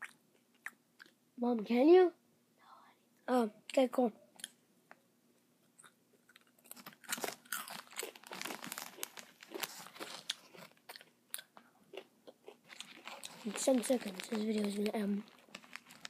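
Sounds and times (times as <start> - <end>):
person chewing crunchy chips: 5.8 - 16.0.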